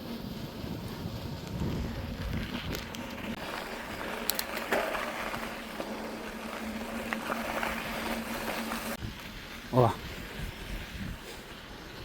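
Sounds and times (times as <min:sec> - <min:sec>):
bike rolling and rattling: 0:00.0 - 0:12.0.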